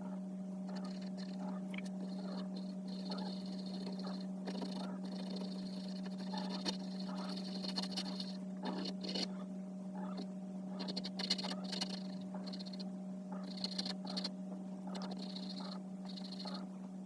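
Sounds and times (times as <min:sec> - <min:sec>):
steady low hum: 0:00.0 - 0:17.0
pencil scratching on paper: 0:02.9 - 0:09.2, 0:10.8 - 0:12.8.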